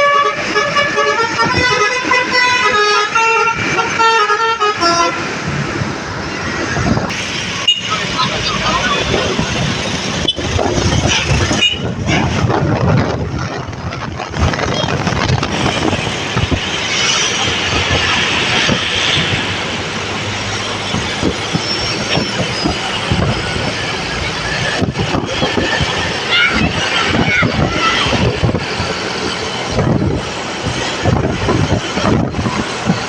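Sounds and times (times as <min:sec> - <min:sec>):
moving bus running noise: 0:00.0 - 0:33.0
rattling and clatter: 0:09.1 - 0:33.0.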